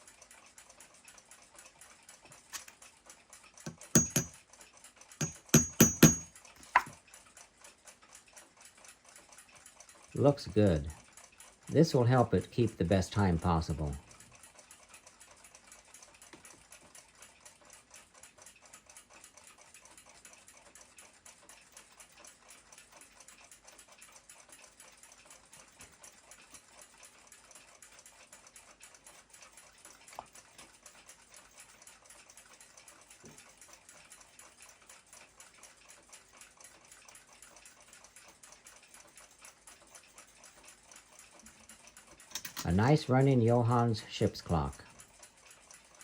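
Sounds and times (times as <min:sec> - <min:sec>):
clock ticking: 0:03.7 - 0:04.3, 0:38.1 - 0:46.0.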